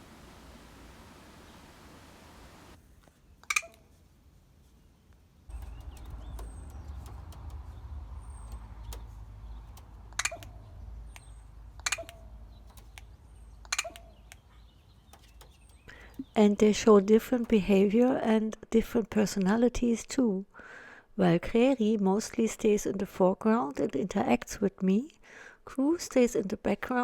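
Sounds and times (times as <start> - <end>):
low outdoor rumble: 0.0 - 2.8, 5.4 - 19.5
small birds chirping: 4.7 - 18.3
crow calling: 10.0 - 16.4.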